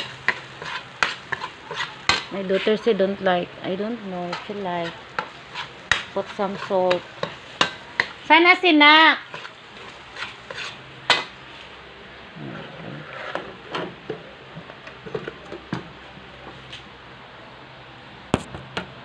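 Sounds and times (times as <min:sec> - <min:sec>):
utensil scraping a pan: 0:00.0 - 0:02.9, 0:04.2 - 0:08.2, 0:09.2 - 0:11.6, 0:12.4 - 0:14.0
faint sizzle: 0:00.0 - 0:19.0.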